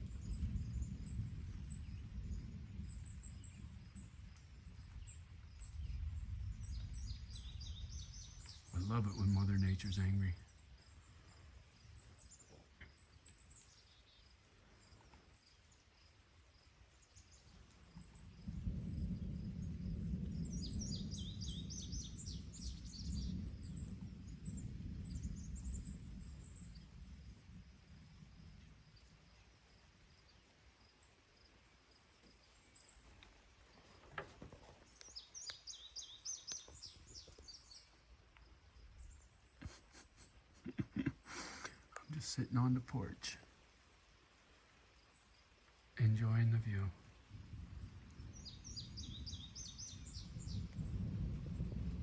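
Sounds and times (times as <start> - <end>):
thunder rumbling: 0.0 - 14.0, 17.3 - 30.2, 34.2 - 39.8, 46.0 - 52.0
bird chirping: 4.9 - 16.2, 19.0 - 27.0, 34.9 - 38.0, 48.2 - 50.8.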